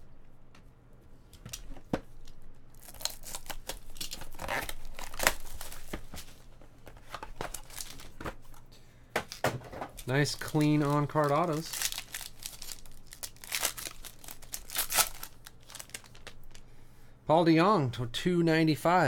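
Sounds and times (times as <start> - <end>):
plastic wrapper crinkling and tearing: 2.7 - 6.4, 7.0 - 8.2, 10.0 - 16.6.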